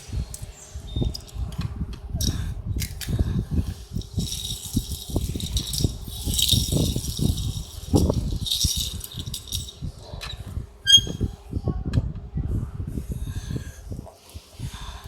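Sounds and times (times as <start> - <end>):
toy car rattling: 2.2 - 11.3
short squeak: 10.9 - 11.3.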